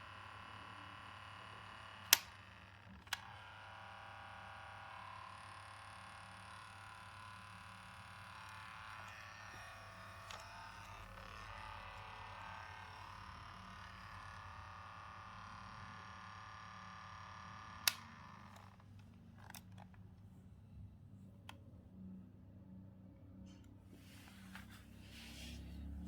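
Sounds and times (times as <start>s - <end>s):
cassette mechanism whine: 0.0s - 20.1s
cassette player button clicks: 17.8s - 18.7s.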